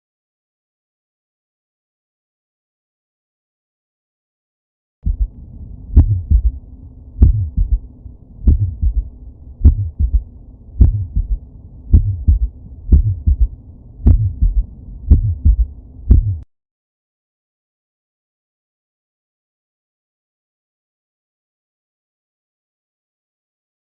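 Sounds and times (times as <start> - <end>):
heartbeat with gallop thud: 5.0 - 5.4, 6.0 - 6.6, 7.2 - 7.8, 8.5 - 16.4.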